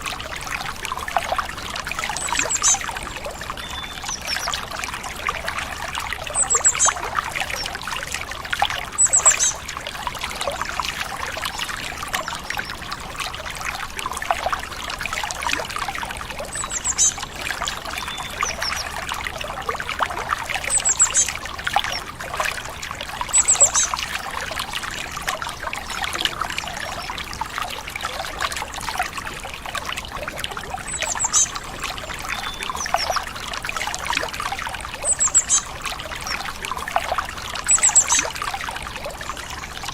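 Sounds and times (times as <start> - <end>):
stream trickling and splashing: 0.0 - 39.9
small birds chirping: 2.0 - 4.8, 6.3 - 7.8, 9.0 - 9.6, 16.5 - 19.0, 20.6 - 22.1, 23.3 - 24.1, 30.9 - 33.3, 35.0 - 36.4, 37.7 - 38.3.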